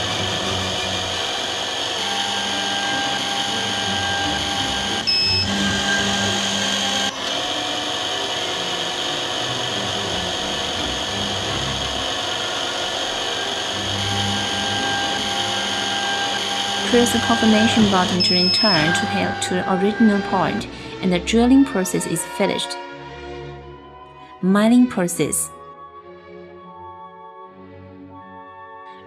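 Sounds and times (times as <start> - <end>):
drilling machine boring a lens: 0.0 - 21.0.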